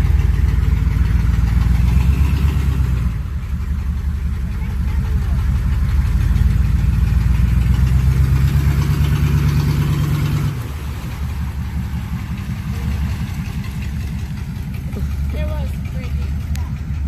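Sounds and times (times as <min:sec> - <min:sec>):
off-road vehicle engine running: 0:00.0 - 0:17.0.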